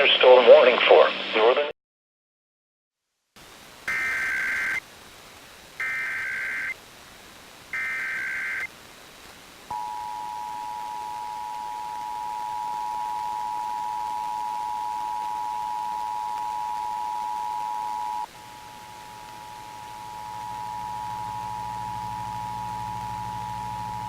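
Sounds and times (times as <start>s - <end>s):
digital data warble bursts: 3.9s - 4.8s, 5.8s - 6.8s, 7.8s - 8.7s.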